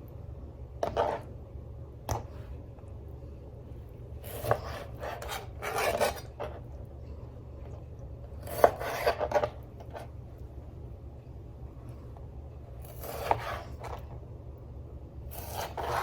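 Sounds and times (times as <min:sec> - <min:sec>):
steady low hum: 0:00.0 - 0:16.0
knife scraping cutting board: 0:00.8 - 0:01.3, 0:04.2 - 0:06.6, 0:08.4 - 0:10.1, 0:12.8 - 0:14.0, 0:15.3 - 0:16.0.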